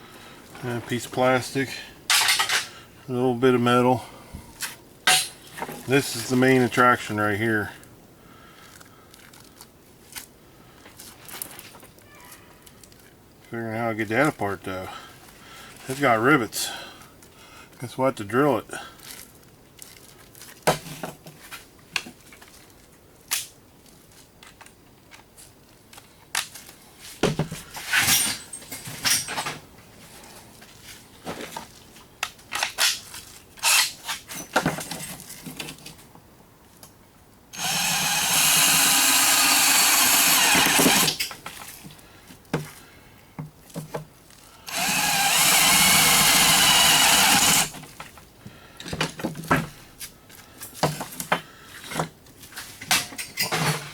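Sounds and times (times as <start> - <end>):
knocks of tools and metal parts: 2.1 - 2.7, 5.1 - 5.9, 52.8 - 53.9
electric drill drilling rivets: 33.6 - 34.0, 37.6 - 41.4, 44.7 - 47.8.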